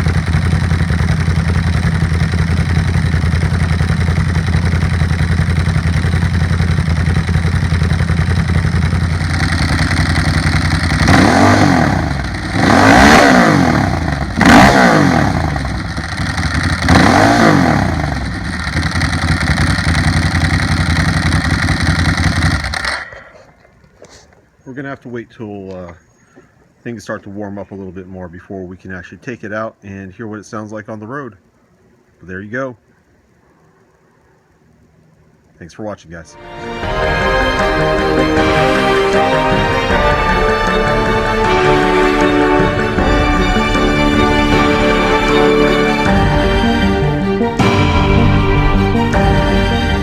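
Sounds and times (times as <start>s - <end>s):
motorcycle exhaust idling and revving: 0.0s - 23.4s, 39.5s - 48.3s.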